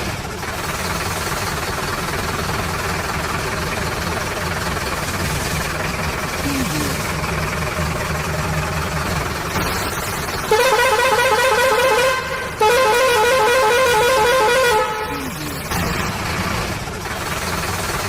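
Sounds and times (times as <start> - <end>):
engine running sound effect: 0.0 - 18.0
warbling electronic horn: 9.6 - 15.8.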